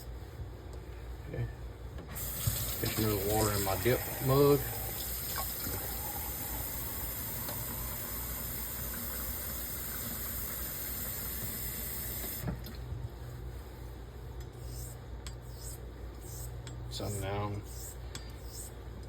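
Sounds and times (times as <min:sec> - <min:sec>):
water running from a tap: 0:02.2 - 0:12.4.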